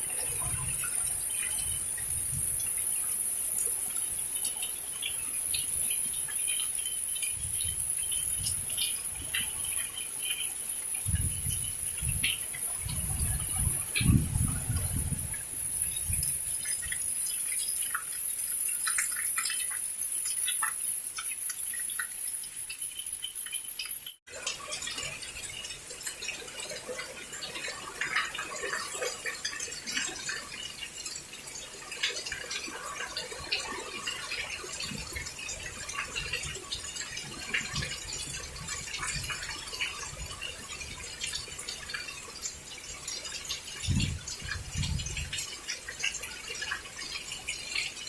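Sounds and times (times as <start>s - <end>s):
water dripping: 0.0s - 48.0s.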